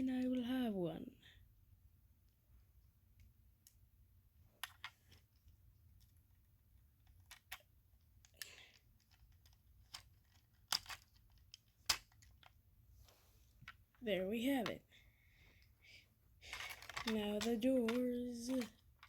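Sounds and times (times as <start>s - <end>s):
small parts clicking and tapping: 4.6s - 12.6s, 16.4s - 19.0s.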